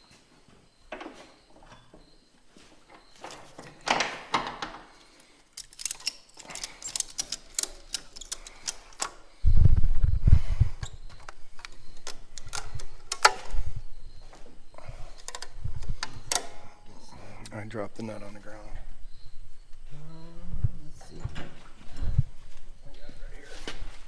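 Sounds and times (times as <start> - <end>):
metal clicks and rattles of tools: 3.2 - 9.3, 11.2 - 13.6, 15.2 - 16.7.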